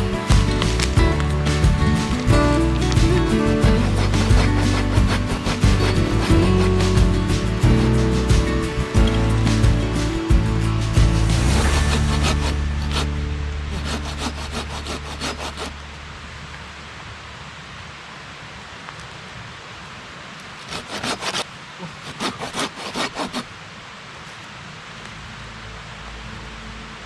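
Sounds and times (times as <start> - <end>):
background music: 0.0 - 15.7
quick rasping strokes: 0.0 - 15.8, 20.6 - 23.5
steady hiss: 0.0 - 27.0.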